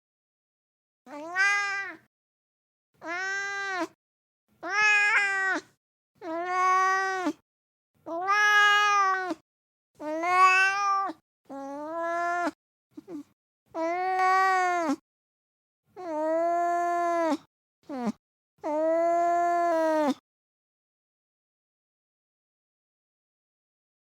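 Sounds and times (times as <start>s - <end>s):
cat meowing: 1.1s - 2.1s, 3.0s - 4.0s, 4.6s - 7.4s, 8.1s - 9.4s, 10.0s - 13.2s, 13.8s - 15.0s.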